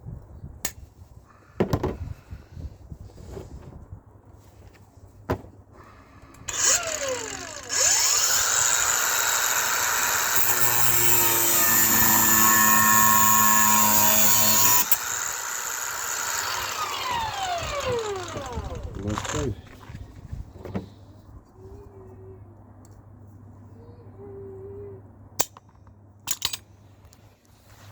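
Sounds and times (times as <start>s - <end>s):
power tool motor whining: 5.8s - 19.8s.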